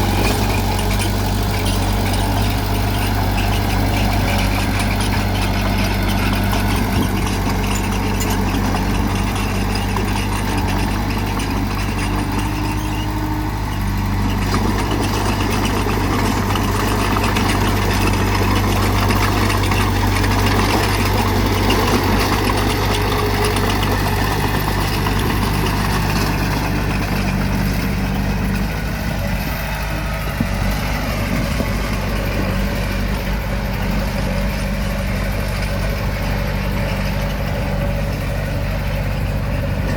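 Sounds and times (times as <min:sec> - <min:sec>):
heavy machinery diesel engine: 0:00.0 - 0:39.9.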